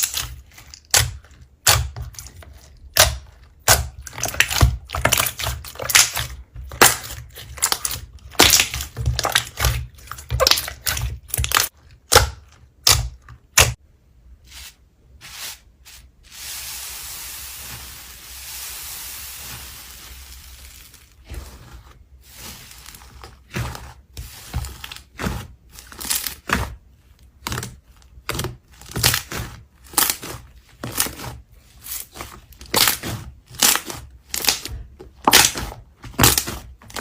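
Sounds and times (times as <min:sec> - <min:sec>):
slime crackling and popping: 0:02.9 - 0:13.8, 0:32.6 - 0:37.0
steady hiss: 0:16.2 - 0:20.8.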